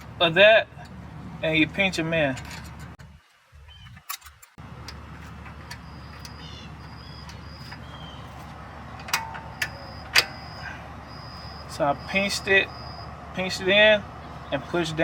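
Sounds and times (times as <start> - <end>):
bird chirps: 3.6 - 4.1, 5.6 - 13.2
brake pad hardware clicking: 3.8 - 10.4.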